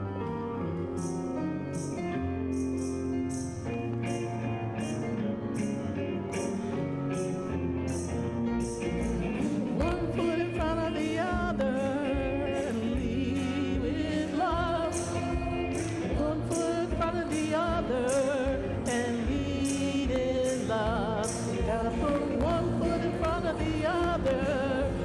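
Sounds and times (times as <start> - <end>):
band playing with steady beat: 0.0 - 25.0
lead singer singing: 9.2 - 25.0.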